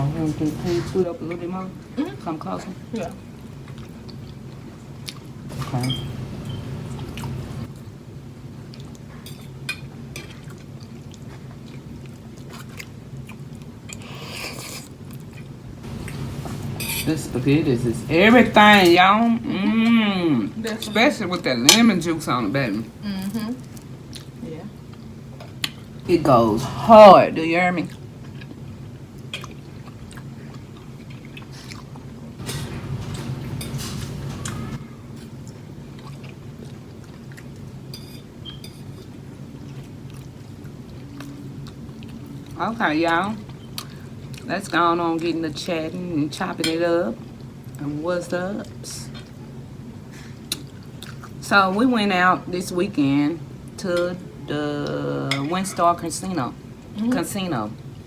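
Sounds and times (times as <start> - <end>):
steady low hum: 0.0 - 9.2, 11.7 - 42.6
chewing and wet mouth sounds: 3.0 - 7.9, 8.5 - 16.7, 23.2 - 26.1, 27.8 - 33.3, 34.0 - 45.4, 47.2 - 47.8, 48.6 - 51.4.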